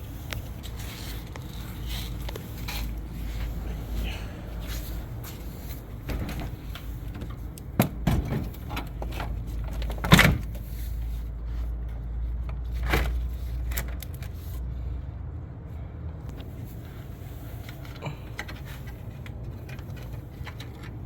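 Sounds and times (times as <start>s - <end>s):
low steady rumble: 0.0s - 21.0s
sharp knocks and clunks: 6.0s - 10.6s.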